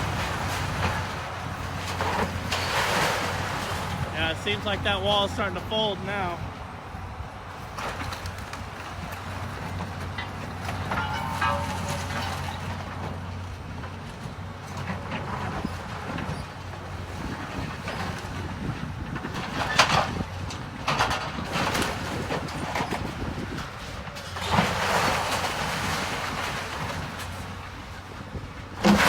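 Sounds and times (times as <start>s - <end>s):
demolition machine engine running: 0.0s - 29.0s
falling debris rushing: 7.9s - 13.2s.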